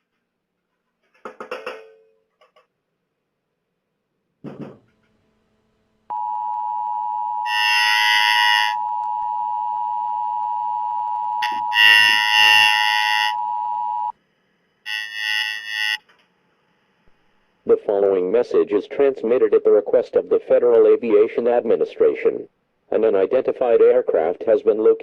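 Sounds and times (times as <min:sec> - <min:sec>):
two-tone attention signal: 0:06.1 - 0:14.1, 0:14.9 - 0:16.0
shrill buzzing data bursts: 0:07.4 - 0:09.0, 0:11.3 - 0:14.1, 0:14.8 - 0:16.0.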